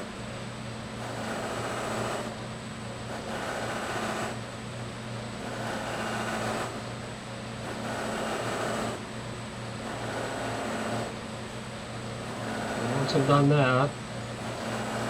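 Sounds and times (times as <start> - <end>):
buffing machine running: 3.2 - 4.5, 12.2 - 15.0.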